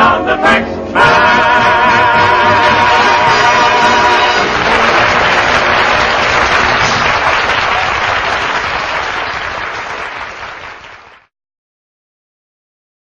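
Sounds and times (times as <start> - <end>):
audience applauding: 2.5 - 11.3.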